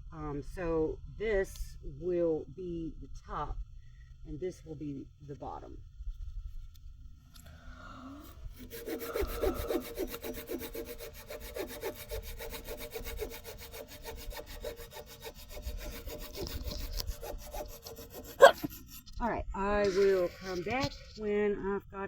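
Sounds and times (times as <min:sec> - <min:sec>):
hand saw cutting log: 0:08.2 - 0:19.2, 0:19.8 - 0:20.9.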